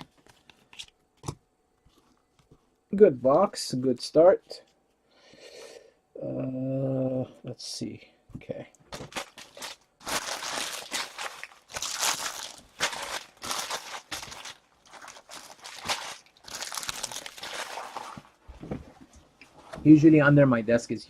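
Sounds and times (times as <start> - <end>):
plastic wrappers crinkling: 8.9 - 18.4.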